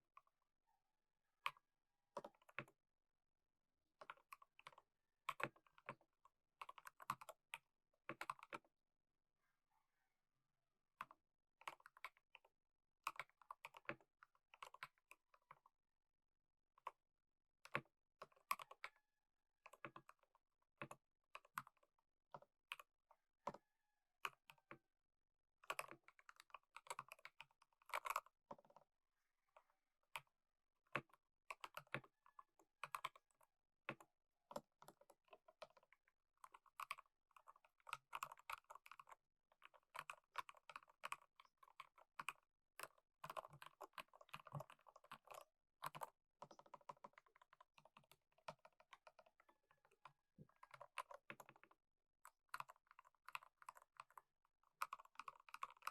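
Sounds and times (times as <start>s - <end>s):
typing on mechanical keyboard: 33.9s - 55.9s.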